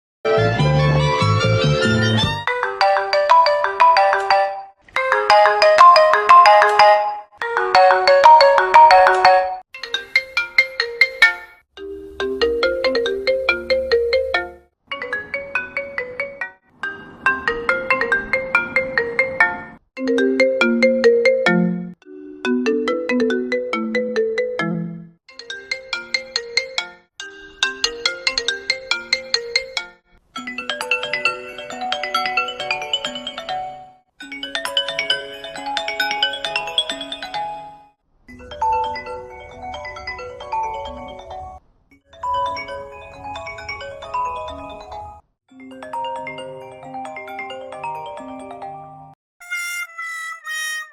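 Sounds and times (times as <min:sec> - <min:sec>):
phone ringtone melodies: 0:02.6 - 0:19.4, 0:49.4 - 0:50.9.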